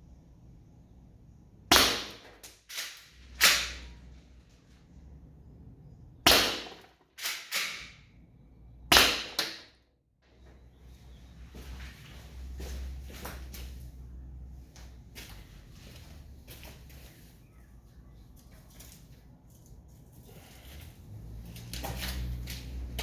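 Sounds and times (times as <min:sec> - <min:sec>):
gun firing cracking shots: 0:01.7 - 0:03.9, 0:06.2 - 0:08.0, 0:08.9 - 0:09.7.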